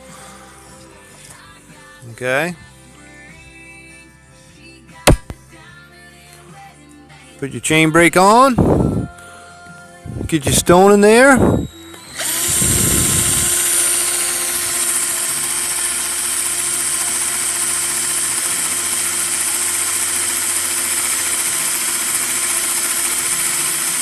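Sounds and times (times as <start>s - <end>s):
drill whining: 8.1s - 9.2s, 10.1s - 24.0s.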